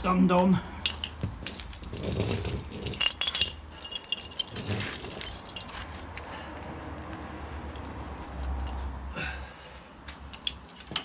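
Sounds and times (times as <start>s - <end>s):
metal clinking and rattling: 0.8s - 6.0s, 10.3s - 11.0s.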